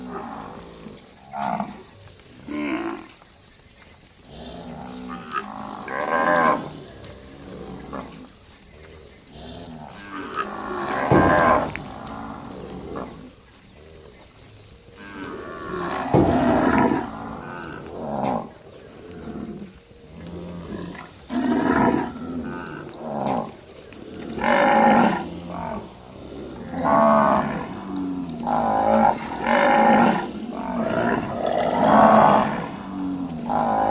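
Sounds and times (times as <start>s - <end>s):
cattle mooing: 0.0s - 3.2s, 4.2s - 13.4s, 15.0s - 33.9s.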